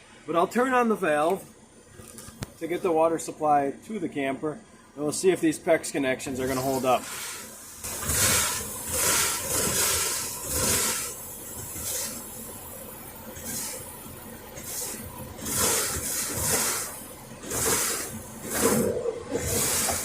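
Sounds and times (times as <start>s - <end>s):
water rushing through pipes: 6.4s - 20.0s.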